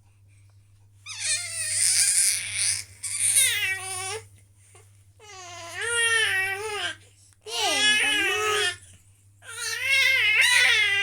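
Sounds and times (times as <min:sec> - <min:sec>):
baby squealing: 0:01.1 - 0:03.7, 0:09.6 - 0:11.0.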